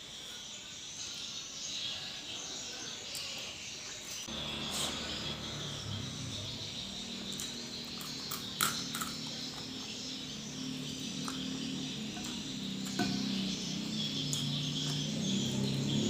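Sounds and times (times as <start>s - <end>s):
chorus of calling insects: 0.0s - 16.0s
low drone: 4.3s - 16.0s.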